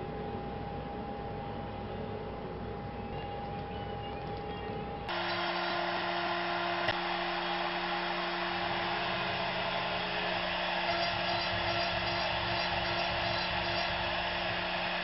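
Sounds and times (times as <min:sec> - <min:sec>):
router spindle whirring: 0:05.1 - 0:15.0.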